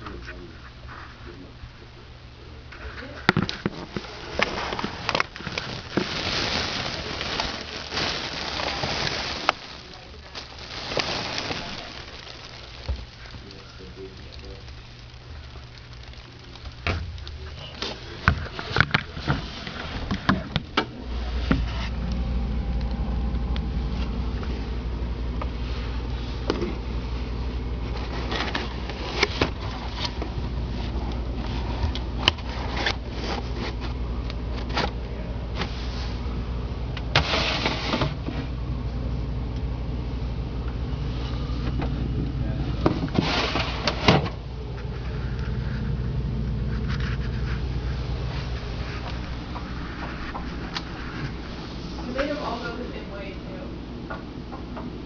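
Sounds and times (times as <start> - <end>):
refrigerator hum: 0.0 - 55.0
rustling of handled items: 3.0 - 22.0.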